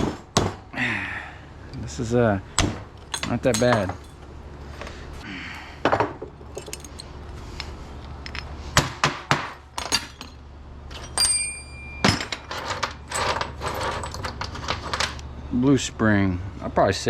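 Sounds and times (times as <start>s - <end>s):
metal parts clinking and clattering: 2.8s - 4.3s, 6.3s - 8.6s, 9.7s - 15.2s
short metallic ring: 9.8s - 12.4s.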